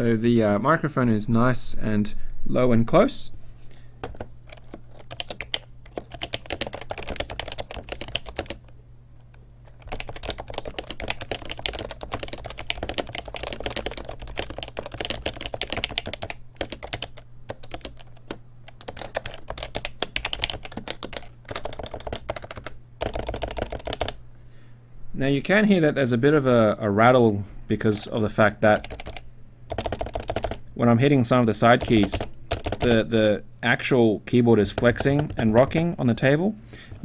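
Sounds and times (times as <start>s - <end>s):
keyboard rattling on table: 4.0s - 8.6s, 9.7s - 24.1s, 28.8s - 30.6s, 31.8s - 33.0s, 34.7s - 35.7s
typing on keyboard: 4.0s - 8.7s, 9.7s - 24.2s, 28.7s - 30.6s, 31.8s - 33.0s, 34.7s - 35.7s.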